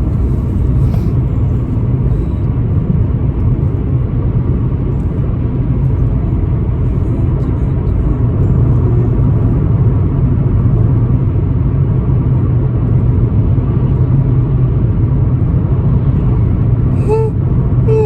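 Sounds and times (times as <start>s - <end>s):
car cabin road and engine rumble: 0.0s - 18.0s
short voice sound: 17.0s - 18.0s.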